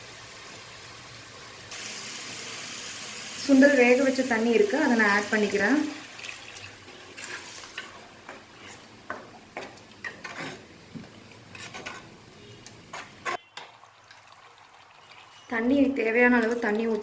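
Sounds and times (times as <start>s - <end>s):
frying sizzle: 0.0s - 17.0s
spoon scraping in a cooking pot: 7.0s - 8.9s, 10.0s - 10.7s, 11.4s - 13.4s.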